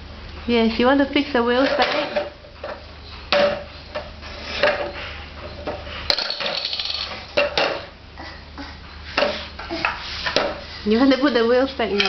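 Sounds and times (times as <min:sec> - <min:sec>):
toy trolley parts clattering: 0:06.1 - 0:07.3.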